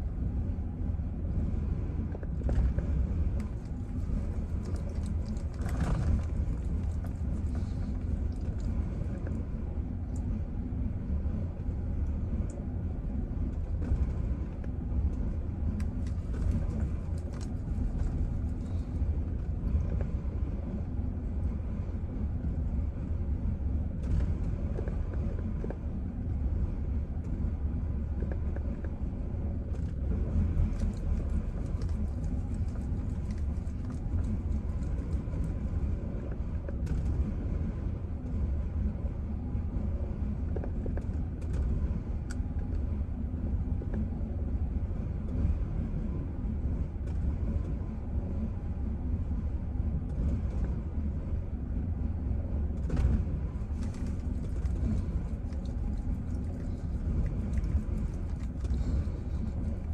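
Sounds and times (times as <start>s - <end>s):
car engine rough idle: 0.0s - 59.9s
faint engine ticks: 2.0s - 10.5s, 28.0s - 37.5s, 38.2s - 45.7s, 52.7s - 59.9s.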